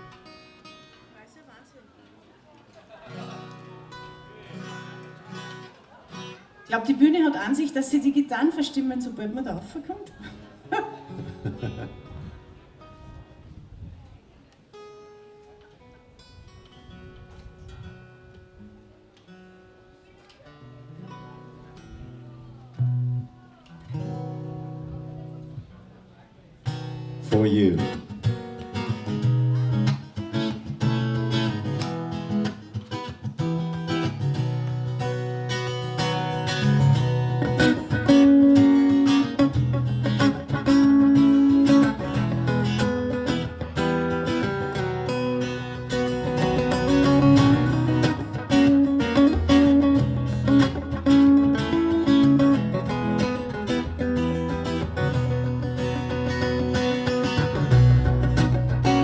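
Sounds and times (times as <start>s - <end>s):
baritone guitar playing: 0.0s - 1.0s, 3.1s - 7.9s, 8.5s - 13.5s, 17.0s - 25.8s, 26.6s - 59.0s
low bass line: 41.9s - 59.0s.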